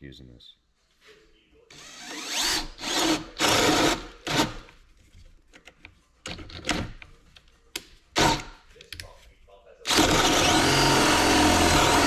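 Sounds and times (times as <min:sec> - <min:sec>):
cordless drill boring into wood: 0:01.7 - 0:04.6, 0:08.2 - 0:08.4, 0:09.9 - 0:12.0.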